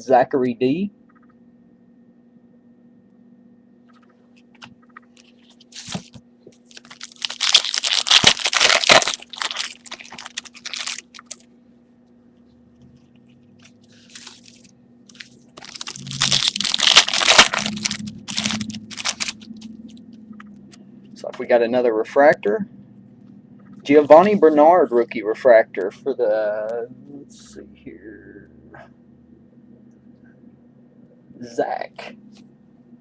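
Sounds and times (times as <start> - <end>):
wrappers crinkling and tearing: 5.2 - 11.5, 13.6 - 19.7.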